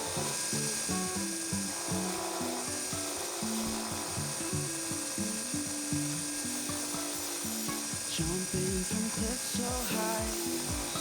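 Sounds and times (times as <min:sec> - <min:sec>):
background music melody: 0:00.0 - 0:11.0
rasping workshop tool: 0:00.0 - 0:11.0.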